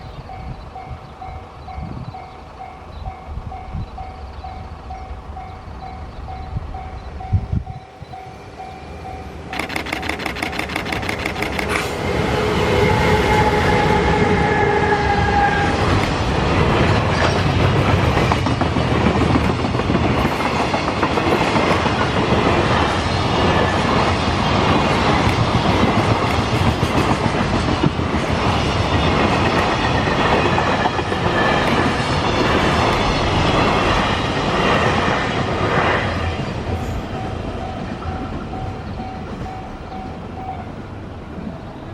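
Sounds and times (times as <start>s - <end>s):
locomotive whine: 0.0s - 26.8s, 27.4s - 41.9s
train wheels rumbling and clacking: 0.0s - 41.9s
level crossing warning bell: 0.3s - 9.7s, 37.1s - 40.8s.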